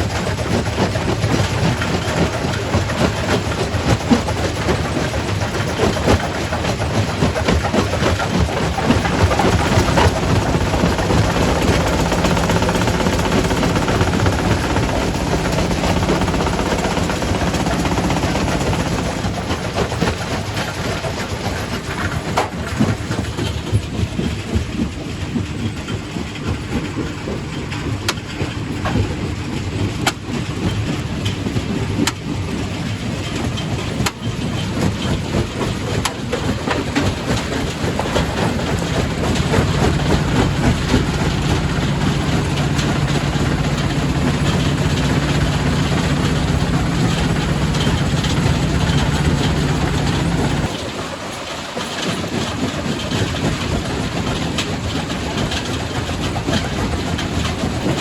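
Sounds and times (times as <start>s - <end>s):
low machine hum: 1.9s - 24.9s, 34.4s - 50.9s.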